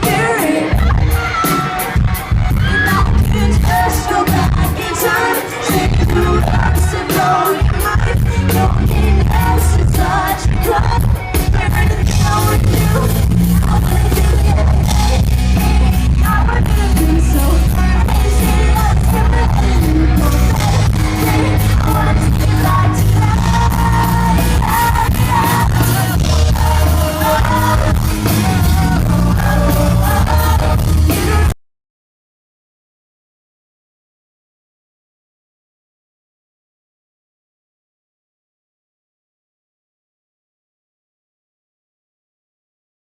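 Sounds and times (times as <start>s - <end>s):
audience yelling: 0.0s - 7.6s
lead singer singing: 0.0s - 31.6s
live pop-rock band: 0.0s - 31.6s.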